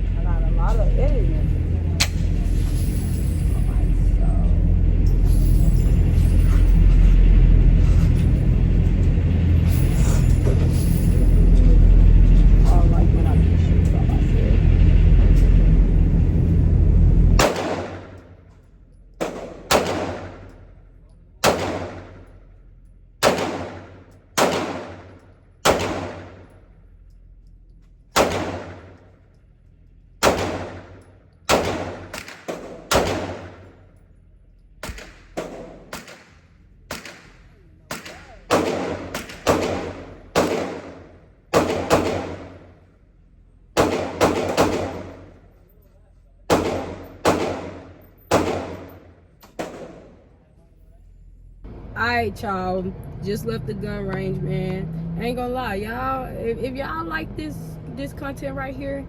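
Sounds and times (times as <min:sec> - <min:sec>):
low rumble: 0:00.0 - 0:59.0
pistol shots: 0:17.4 - 0:18.2, 0:19.2 - 0:20.6, 0:21.4 - 0:22.4, 0:23.2 - 0:26.6, 0:28.2 - 0:29.1, 0:30.2 - 0:33.8, 0:34.8 - 0:42.8, 0:43.8 - 0:45.4, 0:46.5 - 0:50.2.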